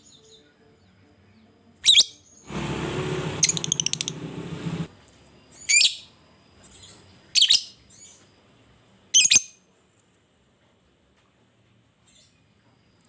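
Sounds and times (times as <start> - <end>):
low background noise: 0.0 - 13.0
bird screeching: 3.4 - 4.3
bird chirps: 3.4 - 4.7.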